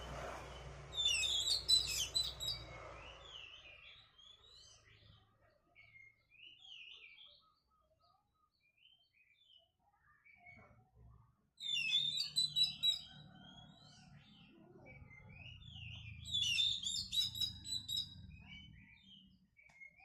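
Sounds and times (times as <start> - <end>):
soft bird twittering: 0.0 - 20.0
bird singing whistled phrases: 1.0 - 2.6, 11.6 - 13.1, 15.1 - 20.0.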